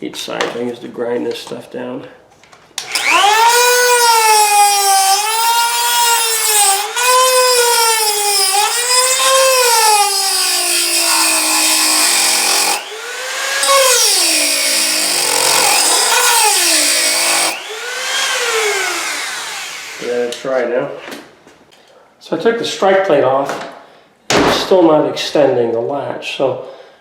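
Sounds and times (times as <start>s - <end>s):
rotary tool grinding metal: 2.8s - 20.5s.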